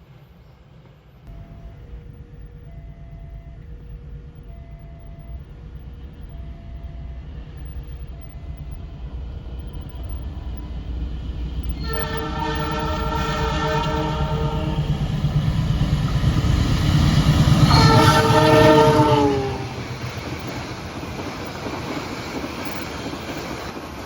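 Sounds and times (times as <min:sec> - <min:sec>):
faint two-note signal: 0:01.3 - 0:10.2
locomotive rumble: 0:01.3 - 0:24.0
locomotive horn blast: 0:11.6 - 0:15.1, 0:17.5 - 0:20.1.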